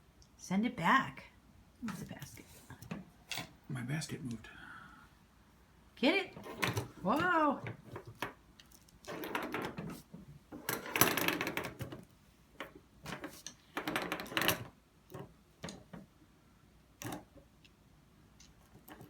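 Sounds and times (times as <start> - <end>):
cat toy rattling on tabletop: 12.6 - 15.3.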